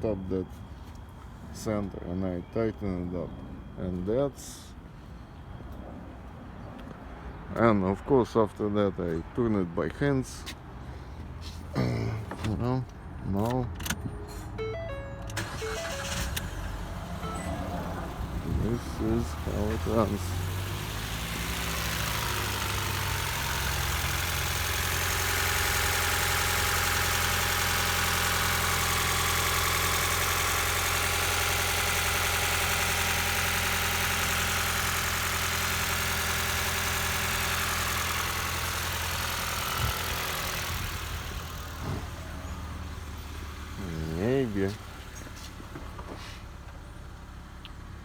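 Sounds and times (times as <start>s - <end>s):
car engine idling: 11.2s - 48.0s.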